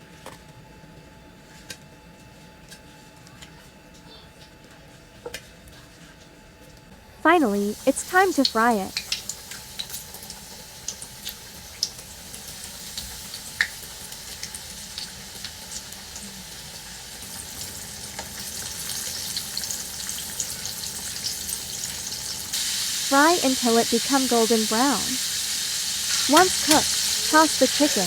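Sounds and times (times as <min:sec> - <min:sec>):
chicken frying in hot oil: 0:07.3 - 0:28.0.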